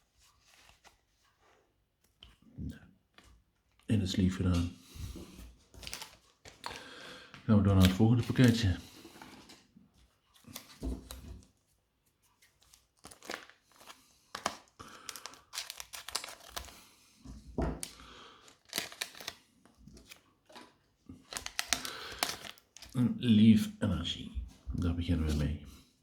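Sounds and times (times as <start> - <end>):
foil wrapper tearing and crinkling: 5.8 - 6.9, 12.6 - 16.9, 17.8 - 20.6, 21.2 - 23.0.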